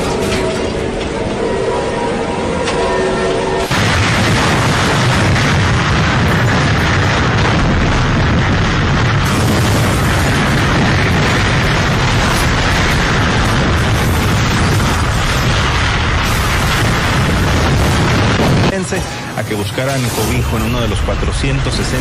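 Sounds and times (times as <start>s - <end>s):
strong wind buffeting microphone: 3.7s - 18.8s.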